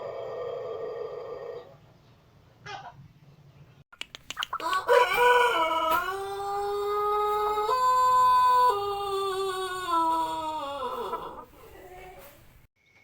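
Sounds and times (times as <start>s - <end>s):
sharp clicks: 3.9s - 4.7s
rooster crowing: 4.6s - 12.4s.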